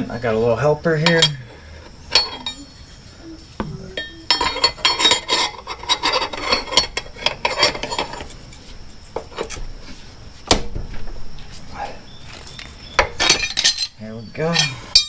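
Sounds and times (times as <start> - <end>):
hand tools clinking on metal: 0.7 - 9.6, 12.2 - 15.0.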